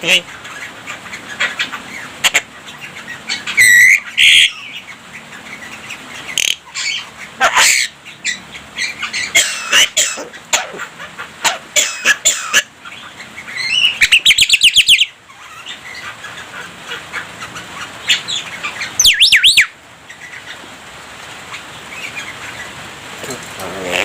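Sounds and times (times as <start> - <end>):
myna singing whistled notes: 19.0 - 19.7.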